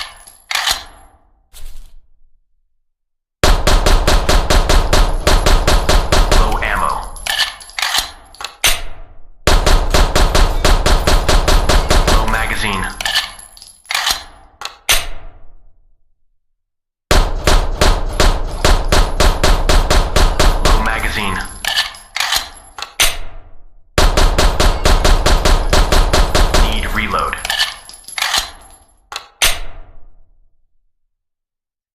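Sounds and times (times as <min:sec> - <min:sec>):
pistol shots: 0:03.4 - 0:06.8, 0:09.5 - 0:12.6, 0:24.0 - 0:28.7.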